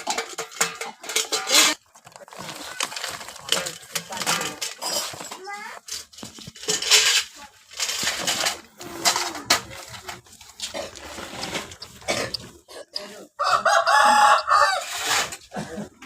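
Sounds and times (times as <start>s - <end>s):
knocks and rustling: 0.0s - 12.9s
rooster crowing: 13.4s - 15.0s.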